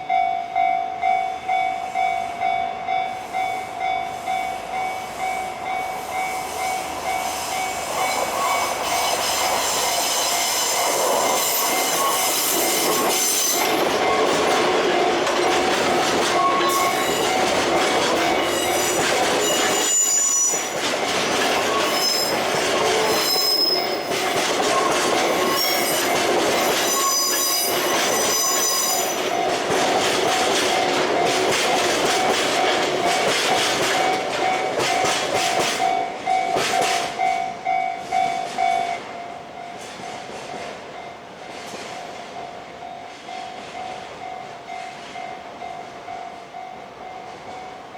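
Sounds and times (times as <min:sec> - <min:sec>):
train wheels squealing: 0:01.7 - 0:14.4, 0:15.9 - 0:29.6
rumble and clack of wagons: 0:11.4 - 0:37.3
two-tone crossing bell ringing: 0:15.9 - 0:29.6.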